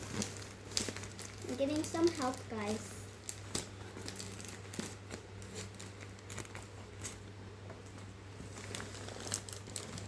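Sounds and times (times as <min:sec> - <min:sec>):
scissors snipping plastic packaging: 0:00.0 - 0:07.3, 0:08.6 - 0:10.0
steady low electrical hum: 0:00.0 - 0:10.0.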